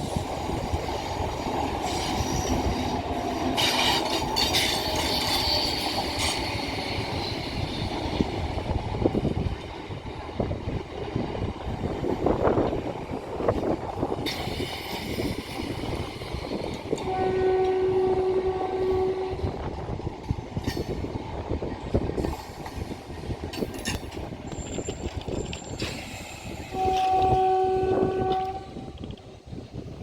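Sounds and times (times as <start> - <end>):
wheels clattering on rails: 0.0 - 17.8, 19.8 - 27.4
train horn blasts: 16.9 - 19.7, 26.7 - 29.0.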